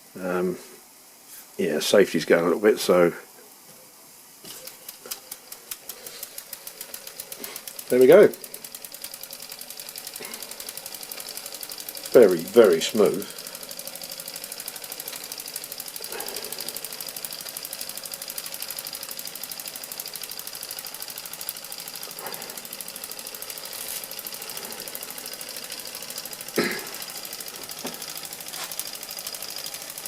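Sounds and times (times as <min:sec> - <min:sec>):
faint high steam hiss: 0:00.0 - 0:05.3
toy steam engine running: 0:04.4 - 0:30.0.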